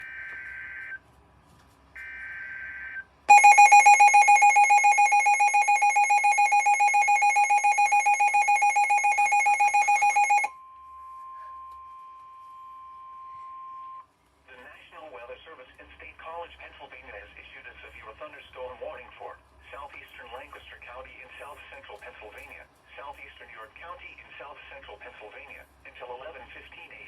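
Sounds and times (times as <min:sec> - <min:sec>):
rapidly pulsing electronic alarm: 0:02.0 - 0:10.6
steady warning alarm tone: 0:02.0 - 0:14.0.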